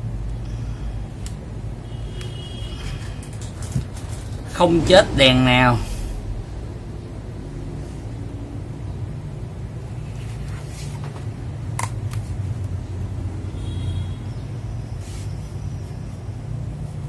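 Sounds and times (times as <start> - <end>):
low background rumble: 2.7 - 13.5.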